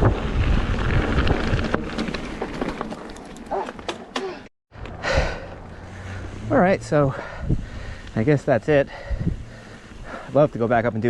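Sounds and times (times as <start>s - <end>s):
wind rushing over microphone: 0.0s - 2.1s, 6.1s - 10.2s
bike rattling over loose ground: 0.0s - 4.3s.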